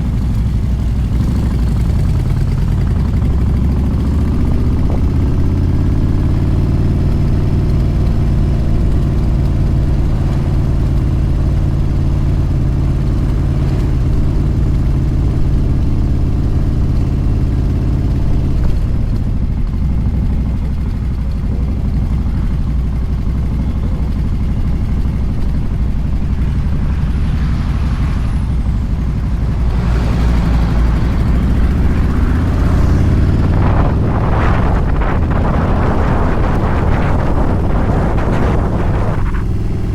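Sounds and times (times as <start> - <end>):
motorcycle engine running: 0.0 - 39.9
wind rushing: 25.5 - 39.9.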